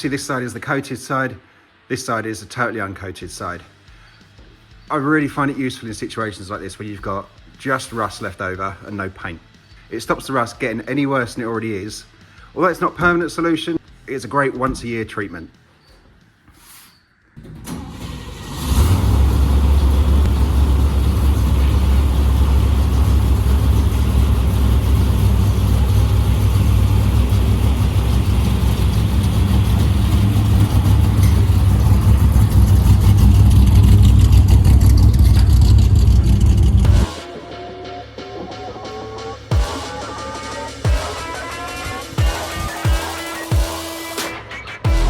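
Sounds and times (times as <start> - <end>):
pickup engine running: 17.7 - 43.7.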